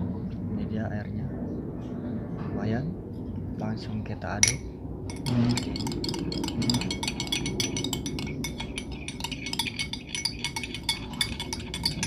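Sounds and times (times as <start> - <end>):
spoon clinking in glass: 4.4 - 12.0.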